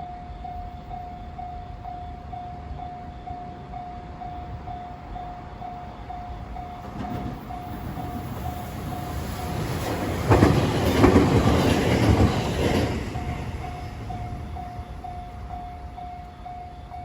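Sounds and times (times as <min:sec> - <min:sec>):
crossing warning bell ringing: 0:00.0 - 0:17.0
train wheels clattering over rails: 0:06.6 - 0:15.8.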